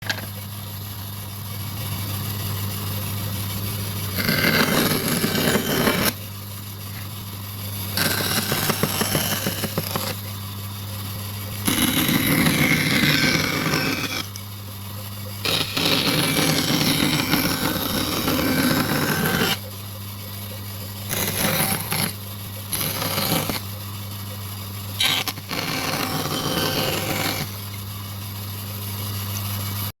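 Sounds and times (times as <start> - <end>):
power tool cutting wood: 4.1 - 6.2, 7.9 - 10.2, 11.6 - 14.4, 15.4 - 19.6, 25.0 - 27.6.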